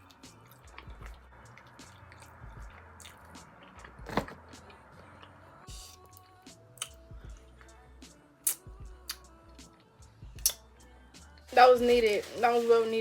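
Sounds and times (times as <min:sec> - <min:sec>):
person biting and chewing: 0:10.4 - 0:10.6.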